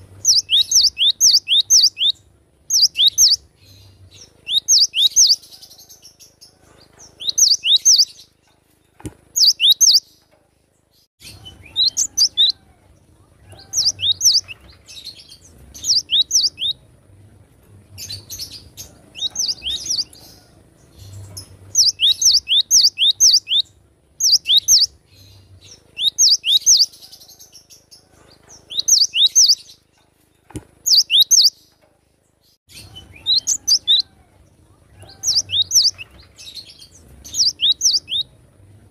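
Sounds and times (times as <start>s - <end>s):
bird whistled song: 0.2s - 3.4s, 4.2s - 5.5s, 7.2s - 8.2s, 9.4s - 10.1s, 13.6s - 15.2s, 15.8s - 16.8s, 21.1s - 25.0s, 25.7s - 26.9s, 28.7s - 29.8s, 30.8s - 31.6s, 32.7s - 34.1s, 35.0s - 38.3s.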